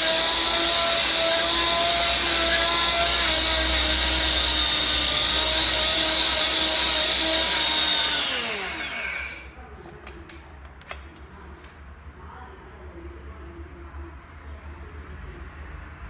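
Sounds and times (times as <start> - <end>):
grinder motor whining: 0.0 - 9.5.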